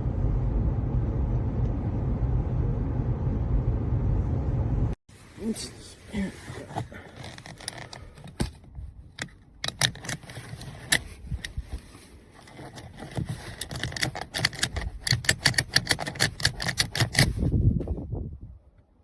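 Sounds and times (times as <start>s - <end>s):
low rumble: 0.0s - 5.0s
sharp irregular clicks and rattles: 7.2s - 11.5s, 12.4s - 17.4s.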